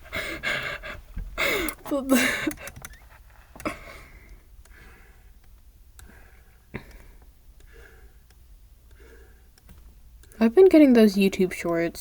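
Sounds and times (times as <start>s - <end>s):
person breathing and sniffing: 3.3s - 5.4s, 6.0s - 9.6s.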